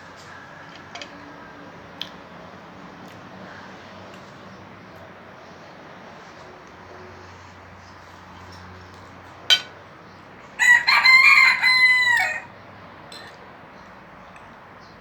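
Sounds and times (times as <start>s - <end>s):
rooster crowing: 10.6s - 12.6s.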